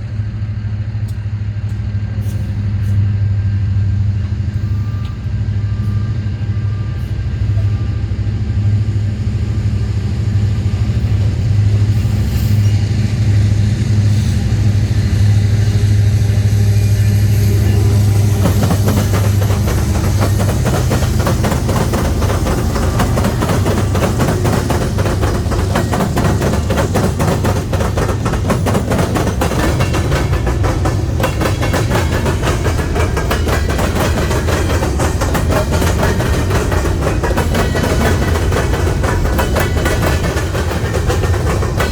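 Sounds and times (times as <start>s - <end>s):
diesel locomotive engine drone: 0.0s - 41.9s
train low rumble: 0.0s - 41.9s
train wheels clicking over rail joints: 10.3s - 41.9s.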